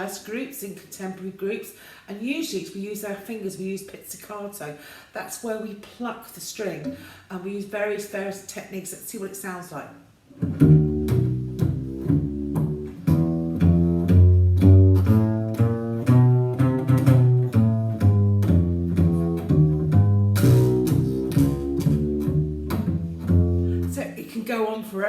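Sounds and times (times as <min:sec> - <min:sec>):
double bass plucked pizzicato: 0:10.3 - 0:24.1.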